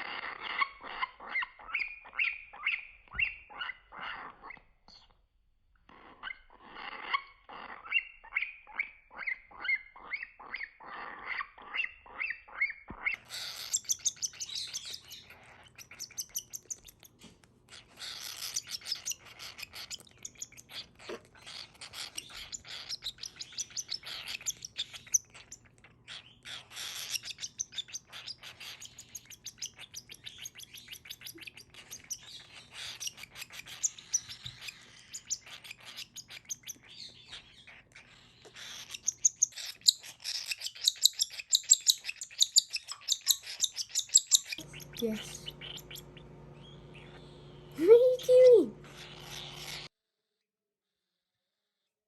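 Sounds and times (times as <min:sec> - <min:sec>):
baby bird begging chirps: 0:00.1 - 0:05.0, 0:06.0 - 0:49.9
faint low hum: 0:44.5 - 0:49.9.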